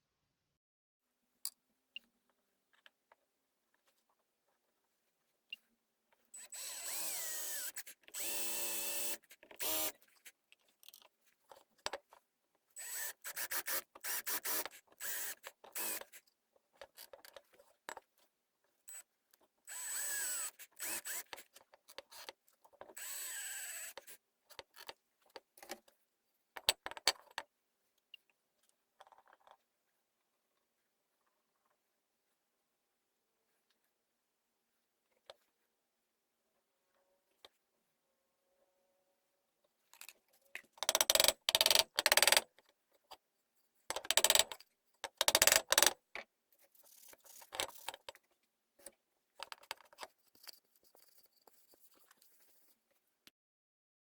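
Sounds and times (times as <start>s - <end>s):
electric power tool motor: 6.5s - 9.9s, 19.7s - 21.3s, 23.0s - 24.0s.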